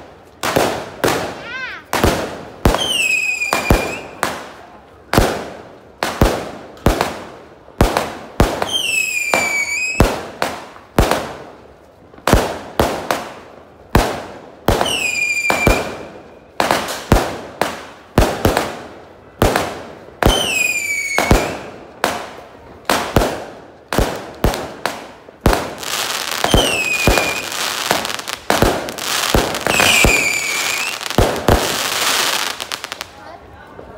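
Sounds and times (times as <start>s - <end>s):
fireworks bangs: 0.0s - 33.9s
fireworks crackling: 0.0s - 33.9s
fireworks shrill whistle: 2.7s - 4.2s, 8.6s - 10.0s, 14.8s - 16.0s, 26.3s - 27.7s, 29.7s - 31.0s.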